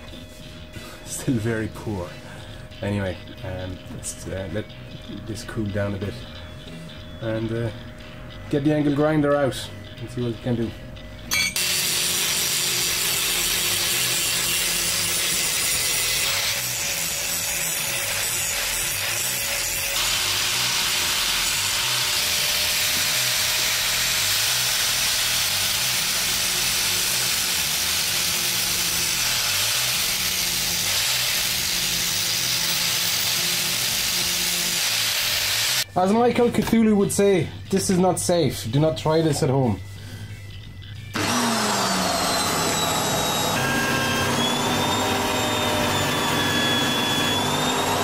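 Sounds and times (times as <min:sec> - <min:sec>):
angle grinder grinding steel: 0:11.3 - 0:35.9, 0:41.0 - 0:48.0.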